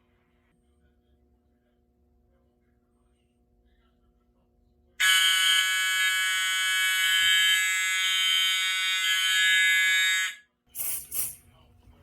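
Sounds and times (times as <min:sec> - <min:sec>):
fire alarm horn buzzing: 0:05.0 - 0:10.5.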